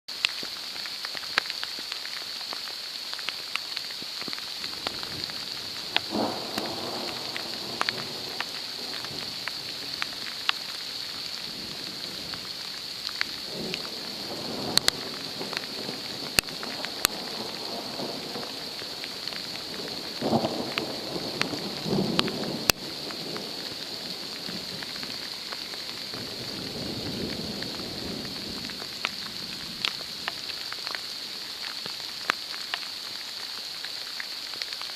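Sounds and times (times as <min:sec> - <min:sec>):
rain hiss: 0:00.1 - 0:34.9
raindrop ticks: 0:00.1 - 0:34.9
thunder rumbling: 0:04.6 - 0:31.0.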